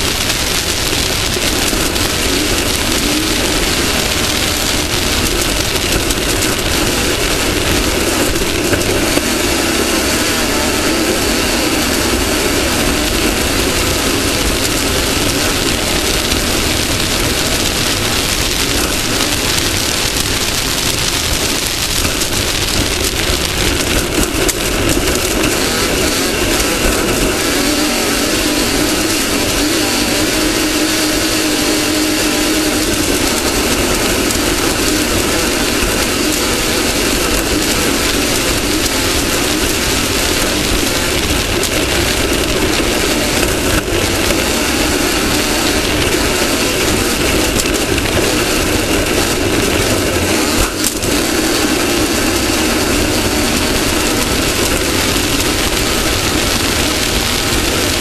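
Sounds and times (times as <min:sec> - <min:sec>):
race car engine running hard: 0:00.0 - 0:58.0
rush of noise: 0:00.0 - 0:58.0.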